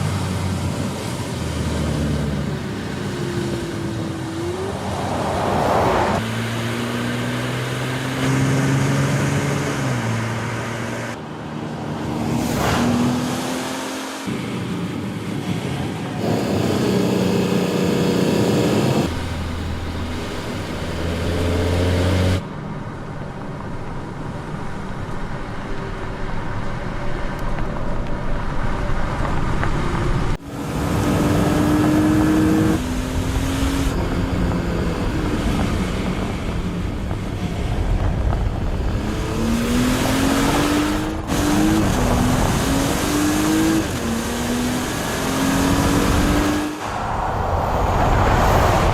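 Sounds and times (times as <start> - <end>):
road noise: 0.0 - 48.9
car engine accelerating through gears: 16.2 - 22.4, 30.2 - 46.9.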